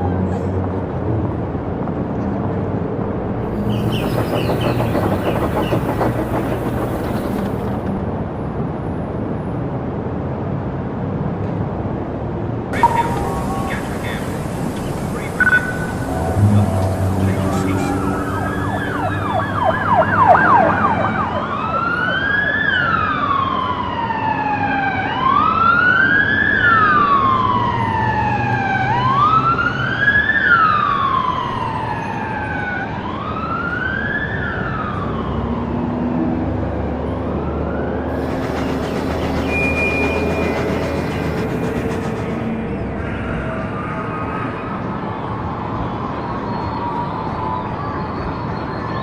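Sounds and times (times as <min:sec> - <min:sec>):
hiss: 0:03.5 - 0:07.8
low rumble: 0:12.8 - 0:20.6, 0:38.1 - 0:43.4
emergency vehicle siren: 0:12.8 - 0:49.0.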